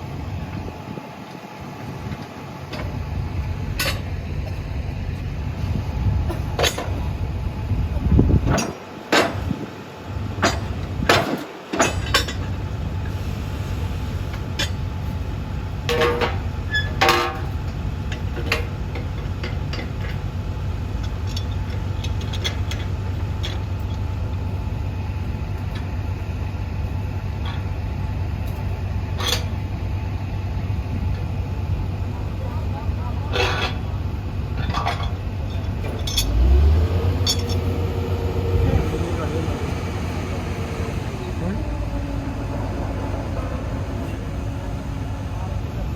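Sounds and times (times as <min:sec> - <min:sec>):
heavy engine droning: 0:00.0 - 0:45.9
sharp metal clanks: 0:34.6 - 0:36.4, 0:37.2 - 0:37.8.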